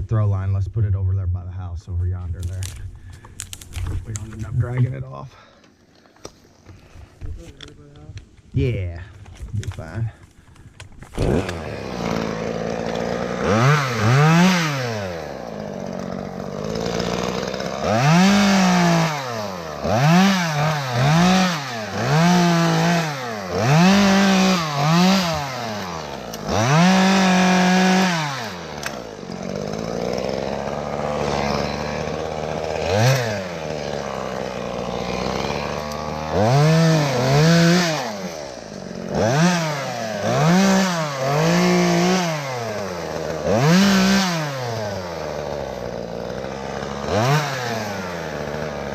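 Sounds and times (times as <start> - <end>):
chainsaw revving cutting wood: 11.0 - 48.9.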